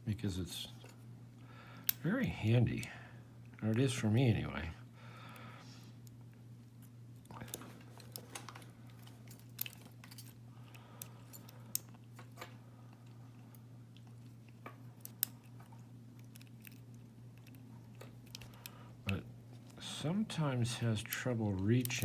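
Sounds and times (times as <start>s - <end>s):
steady low hum: 0.0s - 22.0s
lock pick clicking on pins: 6.8s - 19.2s, 20.6s - 22.0s.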